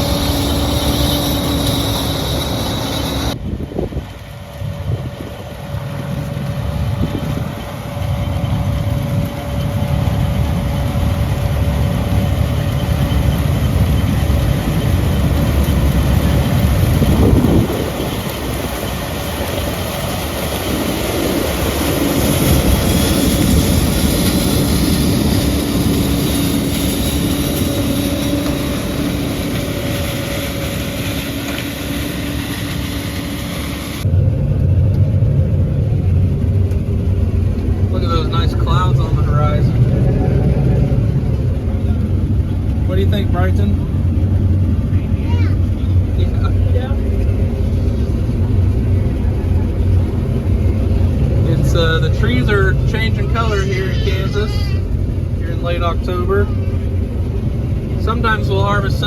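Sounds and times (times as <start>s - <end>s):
combine harvester droning: 0.0s - 59.0s.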